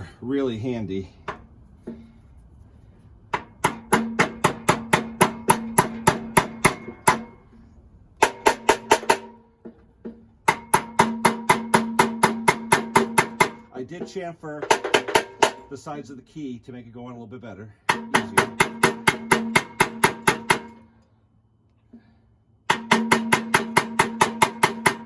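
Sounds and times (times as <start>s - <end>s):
hammer tapping metal: 3.3s - 7.4s, 8.2s - 15.8s, 17.9s - 20.8s, 22.7s - 25.0s.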